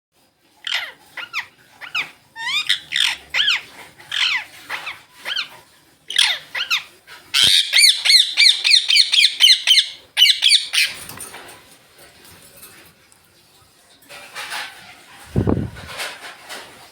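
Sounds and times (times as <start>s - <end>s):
parrots squawking: 0.6s - 11.1s.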